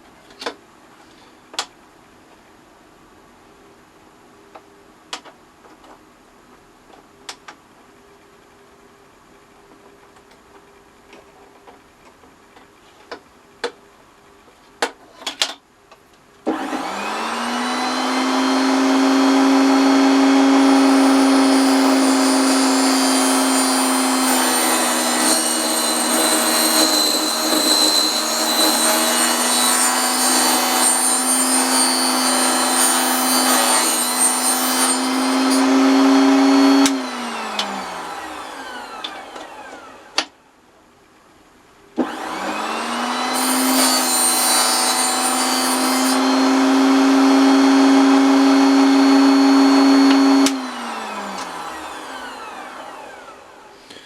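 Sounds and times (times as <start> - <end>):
saw blade grinding wood: 16.5 - 39.8, 42.0 - 53.2
saw blade spinning down: 16.5 - 40.2, 42.0 - 53.7
table saw motor humming: 16.5 - 40.3, 42.0 - 53.8.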